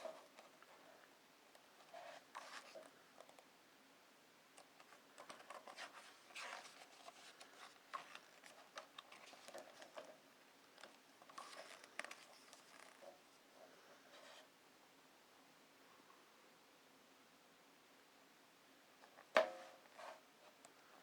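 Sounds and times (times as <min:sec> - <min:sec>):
book pages turning: 0:04.8 - 0:10.2, 0:10.8 - 0:13.1.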